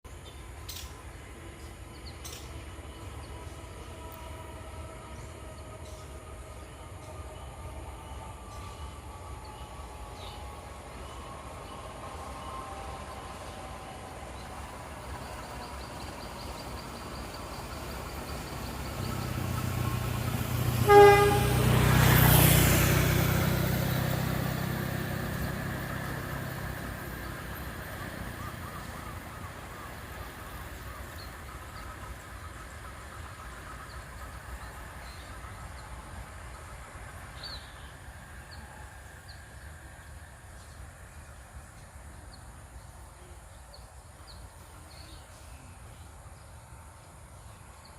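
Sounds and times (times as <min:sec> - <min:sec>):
train rumble and rail noise: 0:00.0 - 0:47.9
train horn blast: 0:19.5 - 0:23.0.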